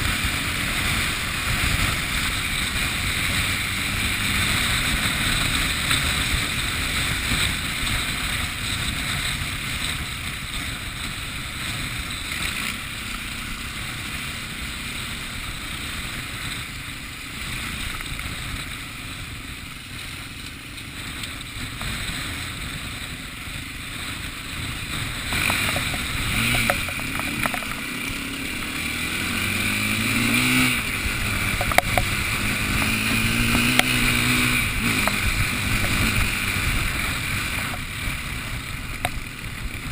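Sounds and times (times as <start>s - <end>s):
pitched drone sliding: 25.3s - 38.4s.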